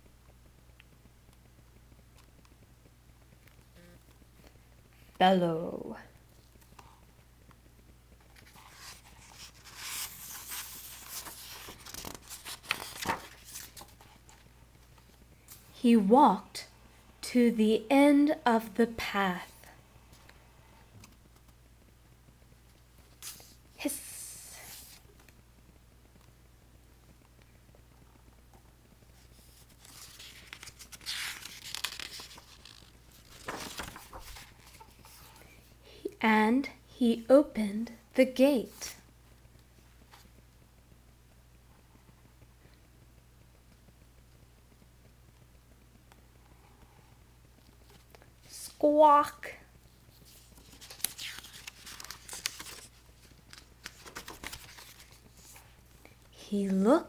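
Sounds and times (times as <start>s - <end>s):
paper rustling: 8.2s - 15.7s, 29.2s - 35.6s, 50.1s - 56.0s.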